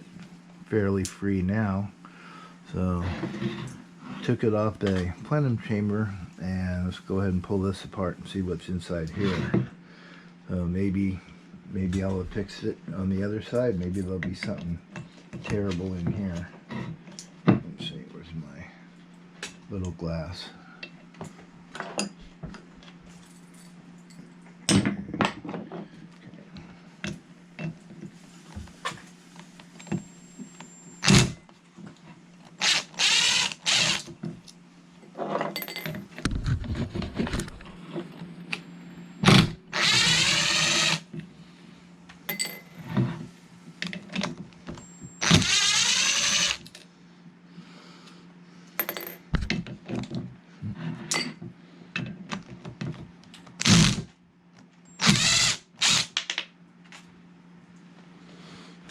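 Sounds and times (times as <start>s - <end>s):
power screwdriver running: 31.0s - 31.4s, 32.6s - 34.1s, 39.7s - 41.1s, 45.2s - 46.7s, 53.6s - 54.0s, 55.0s - 56.2s
tools and parts clattering: 35.2s - 38.2s, 42.3s - 43.2s.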